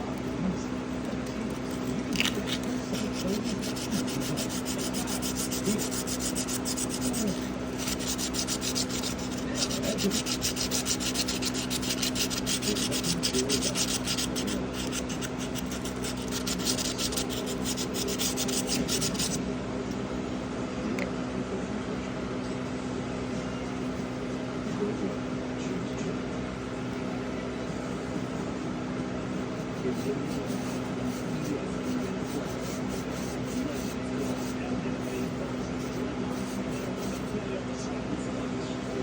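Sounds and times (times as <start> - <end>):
abrasive scrubbing metal: 1.6 - 19.4.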